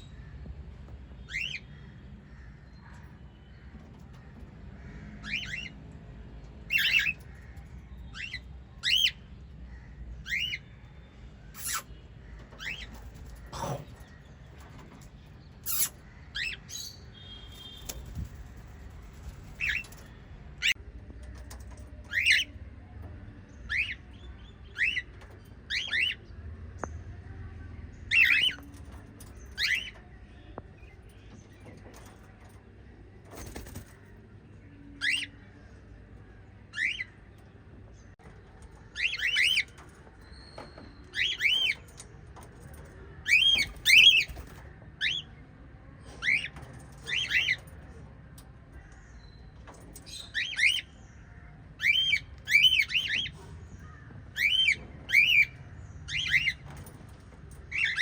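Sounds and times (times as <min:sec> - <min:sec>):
parrots chirping: 0:11.5 - 0:14.1, 0:15.6 - 0:18.1.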